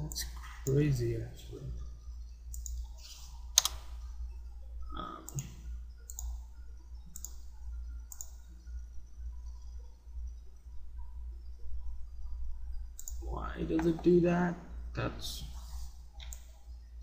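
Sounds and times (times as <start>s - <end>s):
steady low hum: 0.0s - 17.0s
computer mouse clicking: 2.2s - 4.1s, 5.2s - 9.8s, 12.9s - 14.2s, 16.1s - 16.7s.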